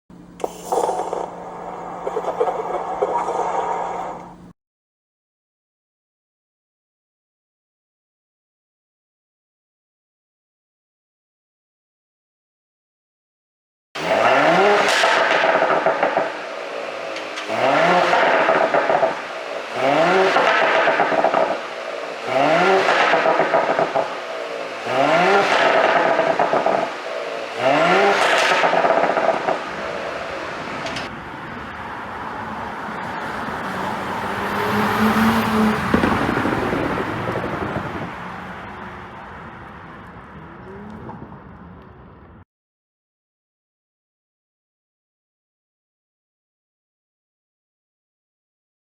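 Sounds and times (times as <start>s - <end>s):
exhaust pops and crackles: 14.0s - 31.1s, 35.5s - 42.4s
car engine revving: 14.0s - 42.2s.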